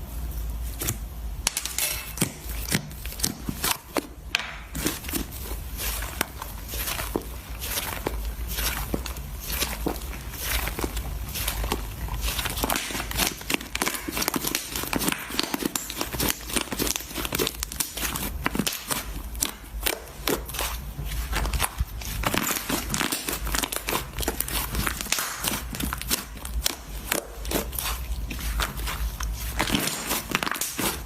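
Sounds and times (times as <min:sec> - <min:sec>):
slime squelching and crackling: 0:00.6 - 0:31.0.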